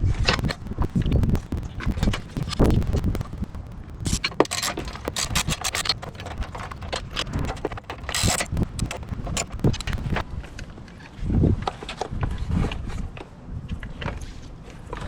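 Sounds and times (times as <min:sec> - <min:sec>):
metal scrape: 0:00.3 - 0:10.2.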